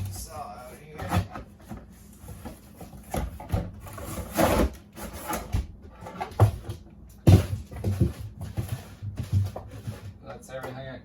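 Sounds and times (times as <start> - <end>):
knocks and thumps: 5.4 - 10.2.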